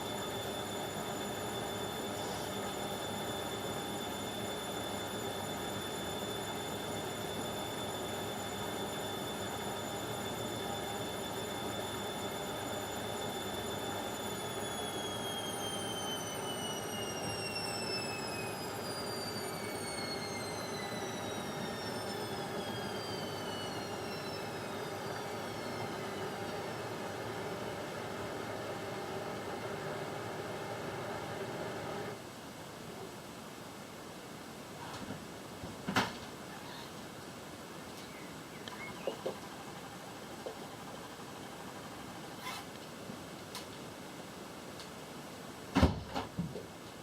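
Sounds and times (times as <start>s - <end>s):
washing machine spinning: 0.0s - 32.2s, 38.8s - 42.5s.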